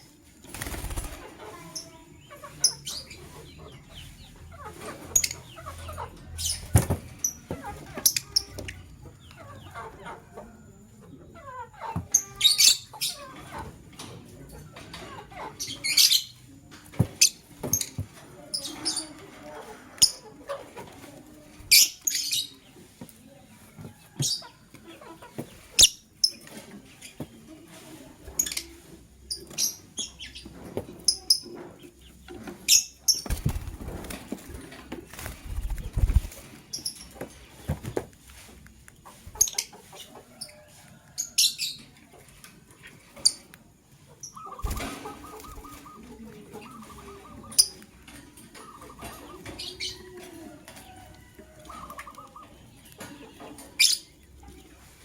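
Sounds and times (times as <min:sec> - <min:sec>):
wings flapping: 0:00.4 - 0:01.4, 0:06.4 - 0:07.2, 0:33.1 - 0:36.7, 0:44.6 - 0:46.1
lovebirds chirping: 0:44.1 - 0:50.1
low chattering bird calls: 0:44.1 - 0:50.1.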